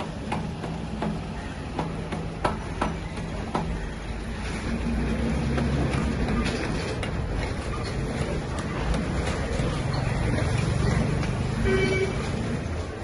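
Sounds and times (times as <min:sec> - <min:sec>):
sharp metallic knocks: 0:00.0 - 0:04.1.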